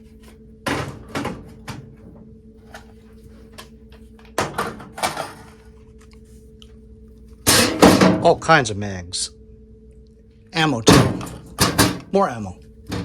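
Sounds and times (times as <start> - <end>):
loud clunks in steel safe: 0.7 - 2.0, 4.4 - 5.5, 7.5 - 8.4, 10.9 - 12.1.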